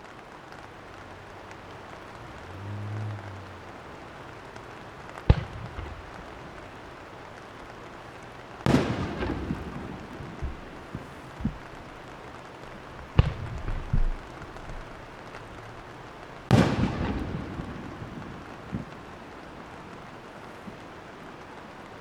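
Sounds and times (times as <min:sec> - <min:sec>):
faint pops: 0:00.0 - 0:21.7
firework shells bursting: 0:00.0 - 0:22.0
rumbling echo: 0:00.8 - 0:21.3.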